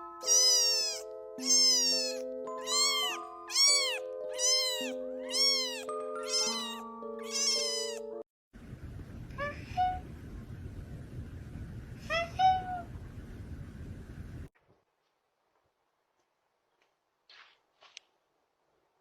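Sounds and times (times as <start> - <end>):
cat meows: 0.2 - 8.2, 9.4 - 10.0, 12.1 - 12.9
faint room noise: 14.1 - 19.0.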